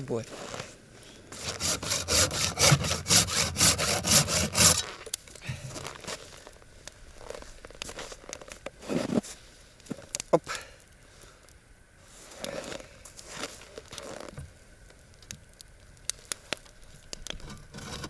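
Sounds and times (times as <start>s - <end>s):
light scrapes: 1.4s - 4.9s, 17.4s - 18.0s
hand saw cutting wood: 1.4s - 5.0s, 17.6s - 18.0s.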